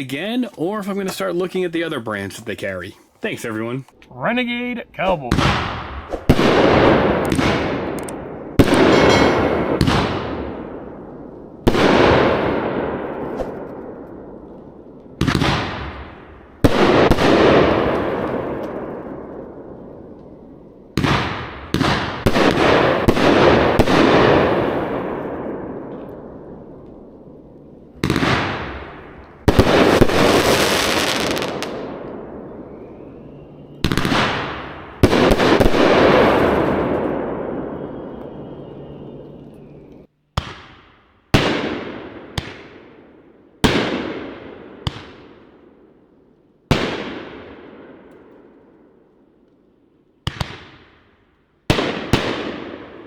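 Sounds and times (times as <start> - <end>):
firework shots bursting: 5.3 - 10.8, 15.2 - 19.1, 21.0 - 25.7, 28.0 - 33.2, 33.8 - 37.7, 40.4 - 45.5, 46.7 - 48.1, 51.7 - 53.0.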